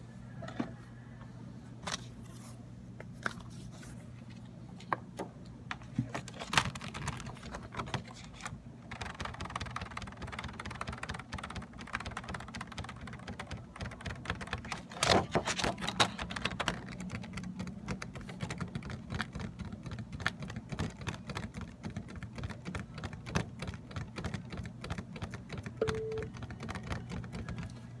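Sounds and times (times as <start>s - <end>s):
keyboard typing: 8.9s - 27.8s.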